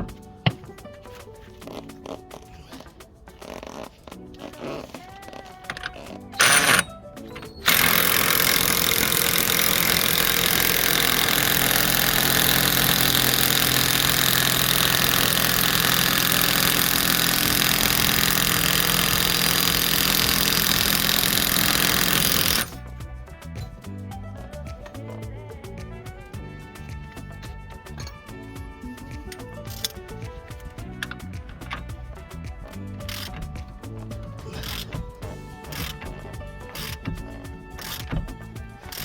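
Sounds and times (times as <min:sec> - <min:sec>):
background music: 0:00.0 - 0:39.0
power tool running: 0:05.7 - 0:22.8, 0:36.7 - 0:39.0.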